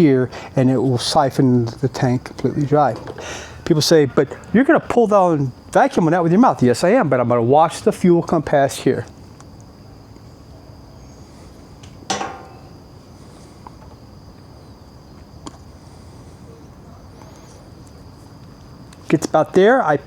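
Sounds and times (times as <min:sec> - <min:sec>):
faint high whine: 0:08.4 - 0:15.2.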